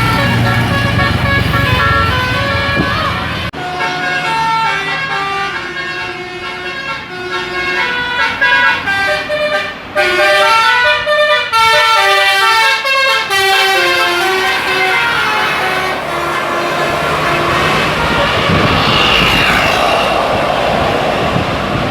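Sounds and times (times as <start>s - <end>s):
musical bus horn tune: 0.0s - 19.5s.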